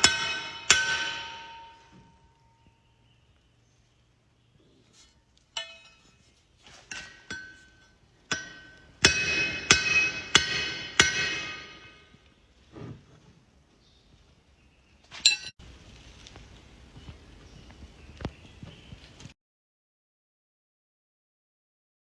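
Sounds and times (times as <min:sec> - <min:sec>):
hammer striking metal on anvil: 0:00.0 - 0:02.7, 0:05.6 - 0:06.1, 0:06.9 - 0:12.1, 0:15.2 - 0:15.6.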